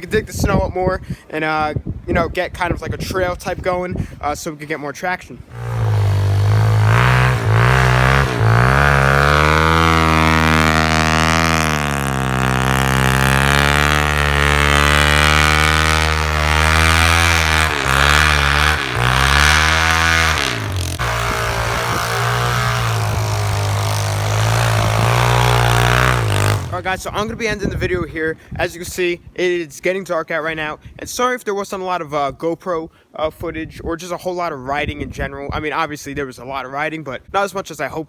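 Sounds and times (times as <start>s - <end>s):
motorcycle engine revving: 5.5s - 27.1s.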